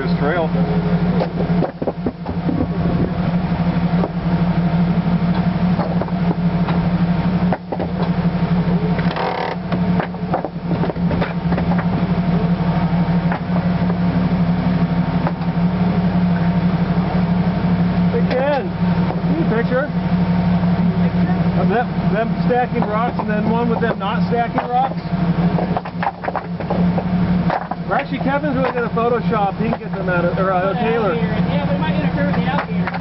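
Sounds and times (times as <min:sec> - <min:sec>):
off-road vehicle engine running: 0:00.0 - 0:33.0
chassis knocks and creaks: 0:01.1 - 0:03.2, 0:05.3 - 0:08.3, 0:08.9 - 0:12.2, 0:13.2 - 0:14.0, 0:15.2 - 0:15.6, 0:22.5 - 0:30.2, 0:32.2 - 0:33.0.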